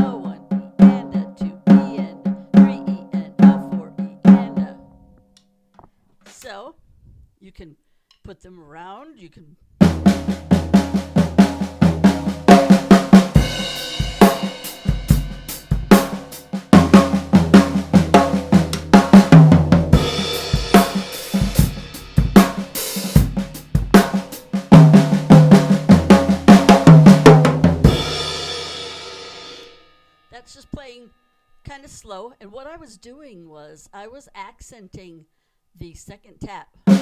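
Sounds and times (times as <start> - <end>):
drum kit rudiments on snare and toms: 0.0 - 4.8, 9.8 - 29.9
bass drum: 9.8 - 29.0
cymbals ringing: 27.9 - 31.7.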